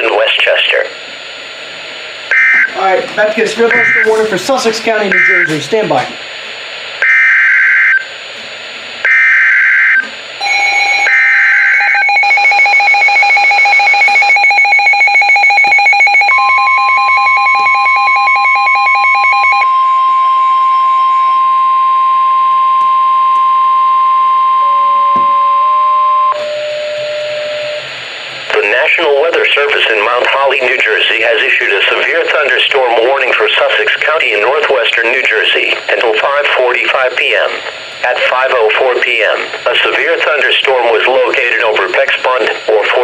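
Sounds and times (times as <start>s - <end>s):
loud single-pitch warning tone: 0.0s - 8.3s, 9.0s - 29.0s
digital data screech: 3.6s - 5.6s
pulsing two-tone alert beep: 3.7s - 4.2s, 5.1s - 5.5s.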